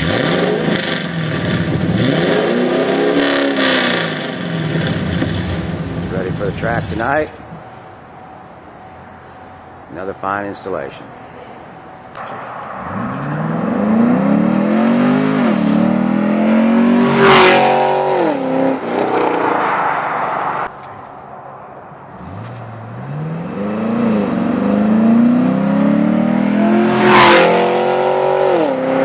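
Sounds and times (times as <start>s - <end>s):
car engine accelerating hard: 0.0s - 7.0s, 12.2s - 20.6s, 22.1s - 29.0s.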